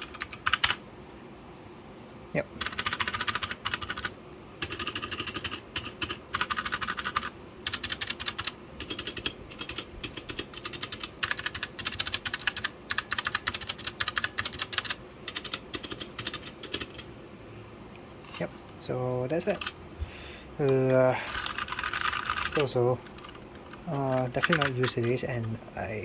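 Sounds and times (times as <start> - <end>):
fast typing on mechanical keyboard: 0.0 - 0.8, 2.6 - 17.1, 19.5 - 19.8, 20.6 - 25.6.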